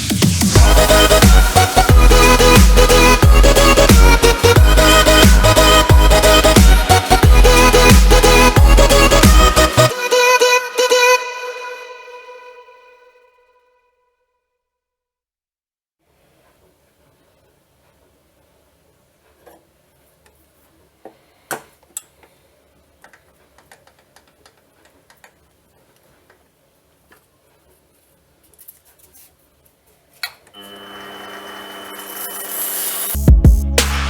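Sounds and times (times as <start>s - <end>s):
ambient music: 0.0s - 13.0s, 33.2s - 34.0s.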